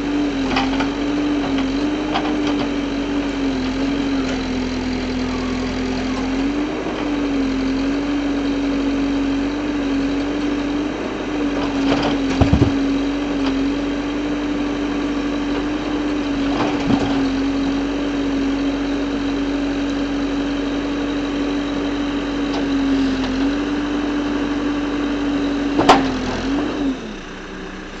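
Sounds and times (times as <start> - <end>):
engine running steadily: 0.0 - 28.0
sharp knocks: 12.4 - 12.9.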